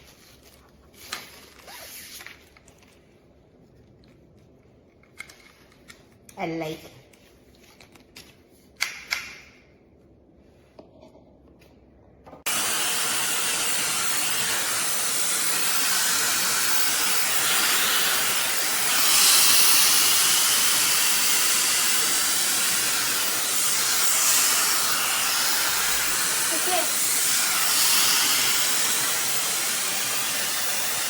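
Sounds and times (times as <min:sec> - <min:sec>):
hair dryer blowing air: 0:12.5 - 0:31.0.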